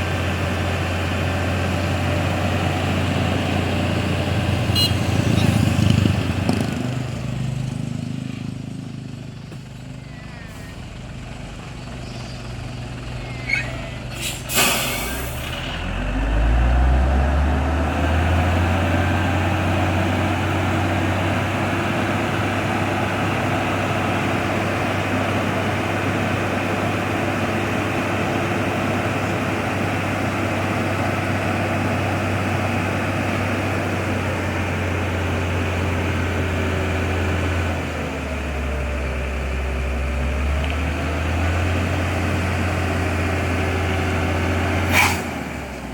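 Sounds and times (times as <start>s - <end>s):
diesel truck engine revving: 0.0s - 45.9s
air hiss: 14.1s - 15.5s, 44.9s - 45.3s.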